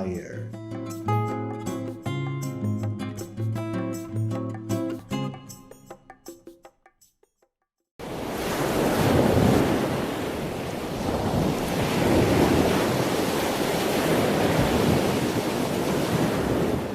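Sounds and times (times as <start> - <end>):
waves washing: 8.0 - 16.9.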